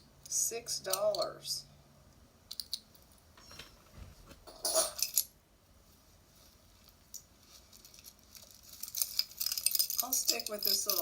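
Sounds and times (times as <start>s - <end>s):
metal jewelry clinking: 2.5s - 5.3s, 7.1s - 11.0s.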